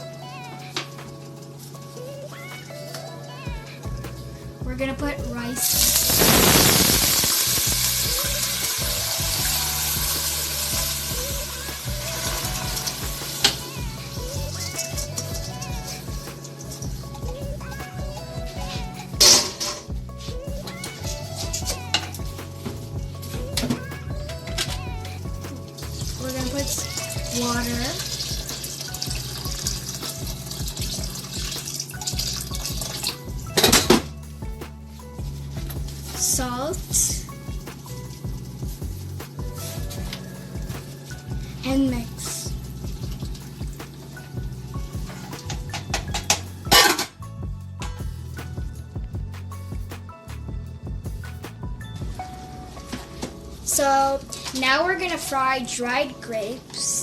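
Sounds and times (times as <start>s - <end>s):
rice sizzling in hot oil: 5.7s - 13.8s.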